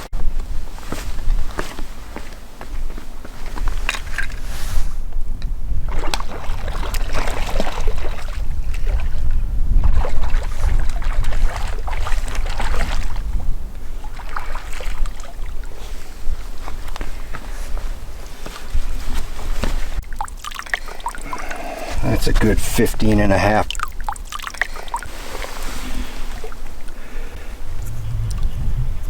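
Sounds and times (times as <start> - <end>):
wind buffeting microphone: 0.2 - 20.0, 25.0 - 29.0
water splashing: 5.9 - 9.2, 9.8 - 13.3, 14.0 - 15.8, 19.7 - 27.0.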